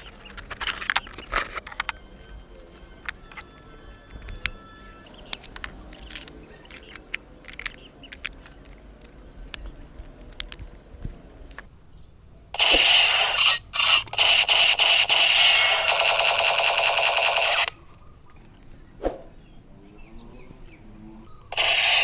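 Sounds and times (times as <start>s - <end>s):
toy gun buzzing rattle: 0.0s - 10.6s, 12.6s - 17.8s, 21.6s - 22.0s
plastic packaging handled: 0.0s - 11.8s, 17.7s - 19.4s.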